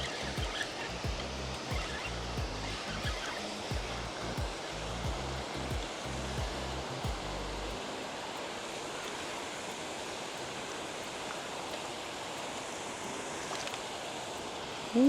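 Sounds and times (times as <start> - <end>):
faint ticks: 8.9 - 15.0.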